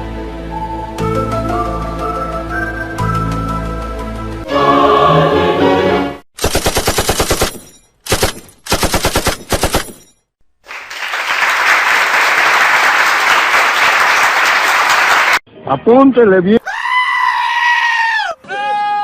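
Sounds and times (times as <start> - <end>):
machine-gun fire: 6.4 - 10.1.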